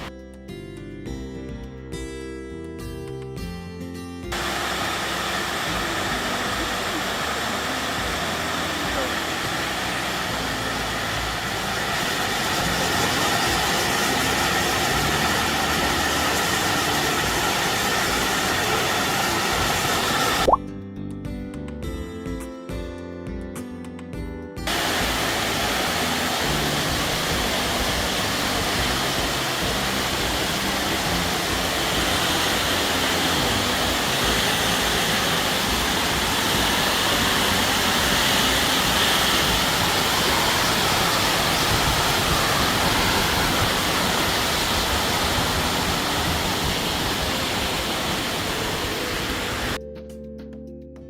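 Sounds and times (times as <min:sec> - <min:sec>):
waterfall rushing: 0:04.3 - 0:20.6, 0:24.7 - 0:49.8.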